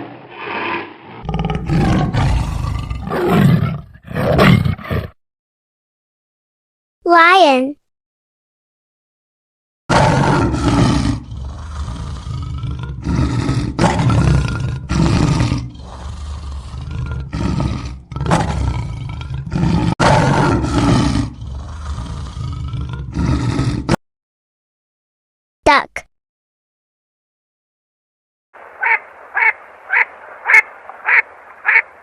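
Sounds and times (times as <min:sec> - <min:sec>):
lion roaring: 0:01.2 - 0:05.2, 0:09.9 - 0:24.0.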